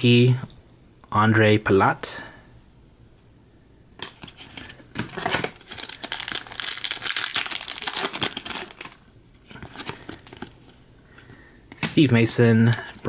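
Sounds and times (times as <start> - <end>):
foil wrapper tearing and crinkling: 5.1 - 9.0.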